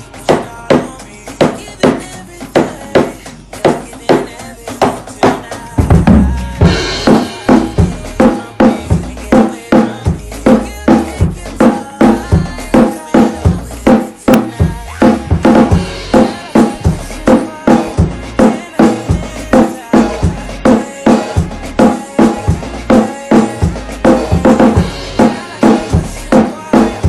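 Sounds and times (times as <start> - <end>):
drum kit groove: 0.0 - 27.0
heavy bass drum: 0.0 - 27.0.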